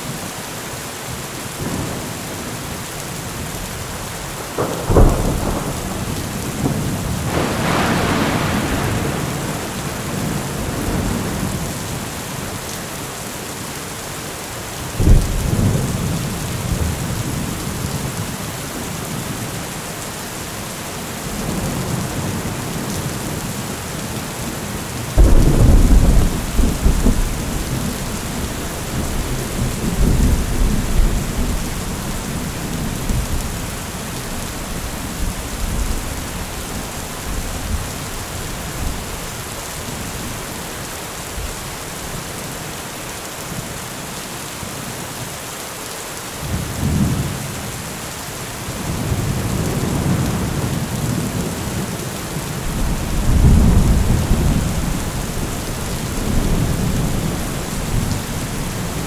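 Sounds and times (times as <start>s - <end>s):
heavy rain: 0.0s - 59.0s
thunder rumbling: 3.9s - 12.5s, 15.0s - 18.3s, 25.2s - 40.7s, 48.7s - 59.0s.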